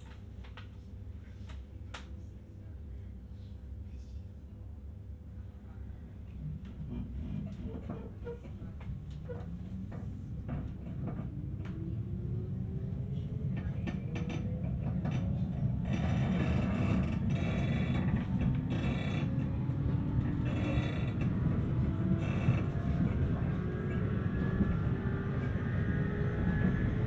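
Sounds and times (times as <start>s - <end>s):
running gear rumble: 13.8s - 27.0s
electric train motor whine: 15.8s - 27.0s.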